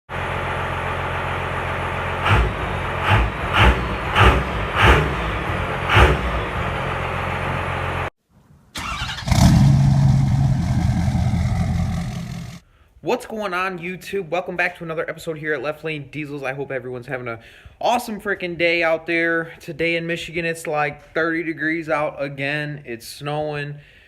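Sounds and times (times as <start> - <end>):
diesel engine droning steadily: 0.1 - 8.1, 9.3 - 12.6
diesel engine running roughly: 0.1 - 8.1, 8.8 - 12.6.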